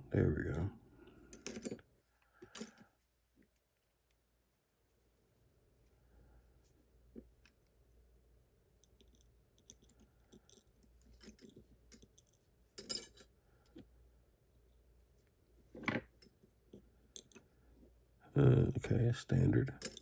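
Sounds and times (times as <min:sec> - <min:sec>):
small metal lock parts clinking: 0:01.3 - 0:01.8, 0:08.8 - 0:13.3.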